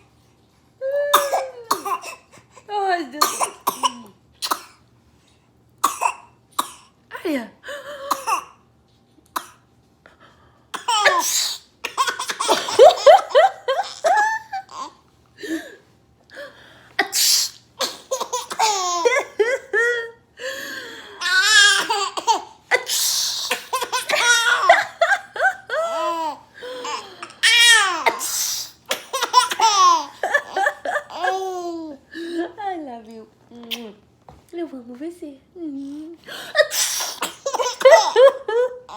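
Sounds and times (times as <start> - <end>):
woman pretend sneezing: 1.0 - 2.0, 36.6 - 37.5
baby belly-laughing: 18.1 - 19.9, 21.2 - 28.1, 29.0 - 32.0, 37.4 - 38.9.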